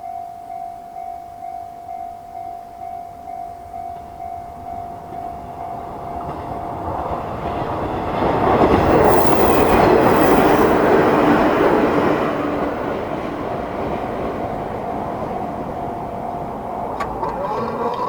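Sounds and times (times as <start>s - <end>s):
crossing warning bell: 0.0s - 18.0s
train wheels clattering on rails: 3.8s - 18.0s.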